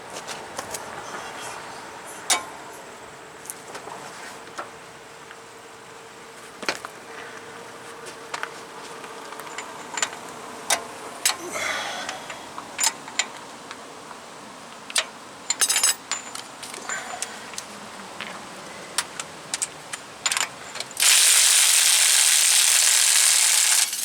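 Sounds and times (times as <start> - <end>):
metallic clinks of hand tools: 14.9 - 17.7.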